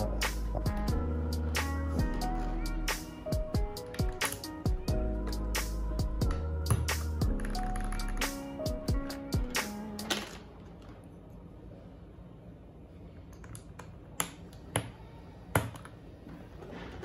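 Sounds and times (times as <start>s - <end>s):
music track: 0.0s - 10.2s.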